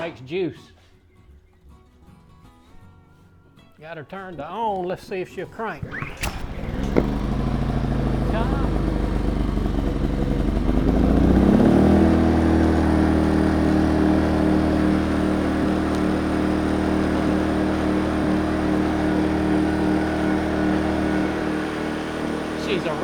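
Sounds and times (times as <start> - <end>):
small generator engine running: 5.8 - 23.0.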